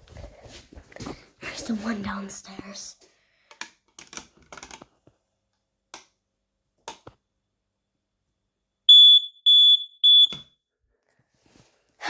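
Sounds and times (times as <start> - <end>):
smoke alarm beep: 8.9 - 10.6.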